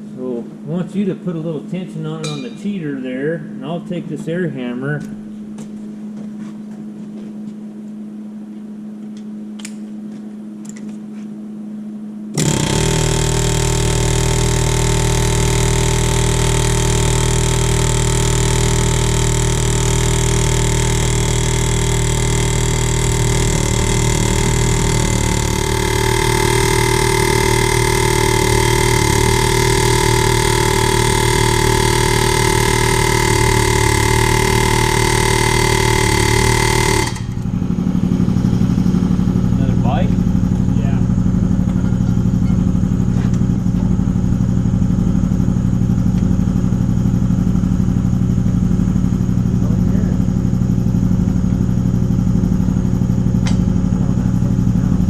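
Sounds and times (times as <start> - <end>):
low steady hum: 0.0 - 55.0
pneumatic air hammer rattling: 12.3 - 39.2.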